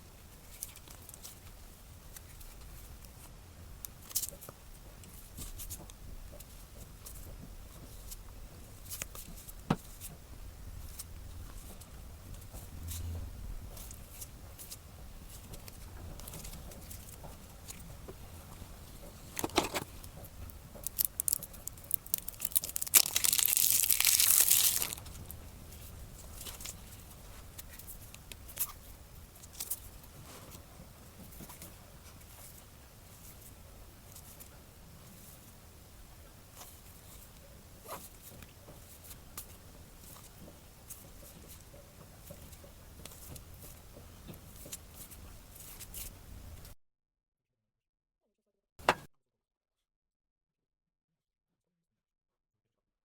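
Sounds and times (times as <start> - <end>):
packaging tearing: 20.8 - 25.3
packaging clicks and crinkles: 20.8 - 25.4.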